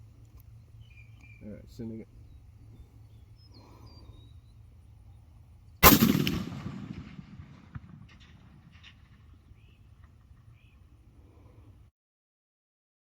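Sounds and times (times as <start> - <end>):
rifle shot echoing: 5.8 - 10.1.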